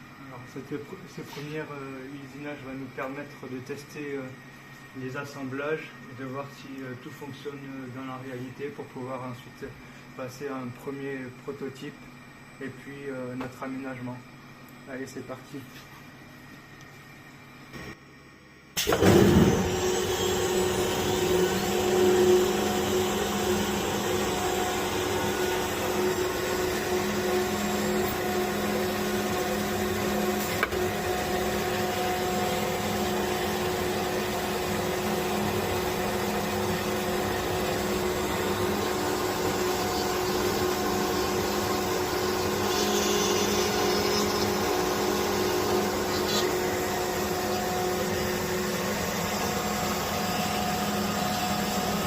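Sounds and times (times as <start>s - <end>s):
router spindle whine: 18.8s - 52.0s.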